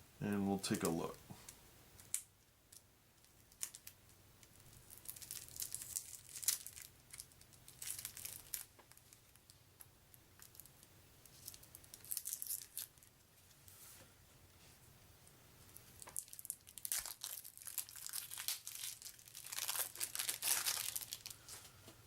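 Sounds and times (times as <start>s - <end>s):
plastic seal tearing and crinkling: 4.9s - 9.1s, 11.4s - 13.1s, 16.0s - 21.3s.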